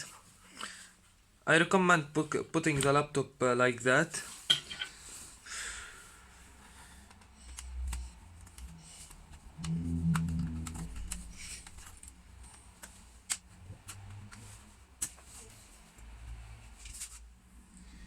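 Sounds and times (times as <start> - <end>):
low hum: 7.5 - 12.6.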